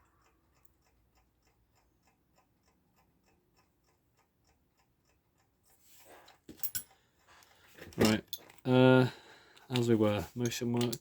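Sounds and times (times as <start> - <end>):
mechanical clock ticking: 0.0 - 5.8.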